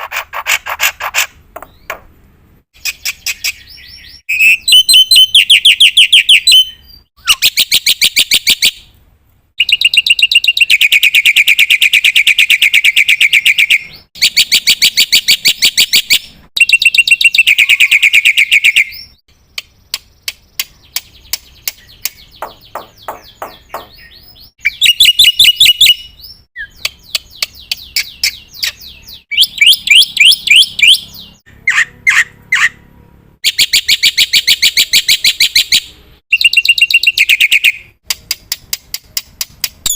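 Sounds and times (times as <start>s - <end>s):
bird clicking notes: 19.5s - 24.1s, 38.0s - 39.9s
starling rapid rattling calls: 22.4s - 24.2s.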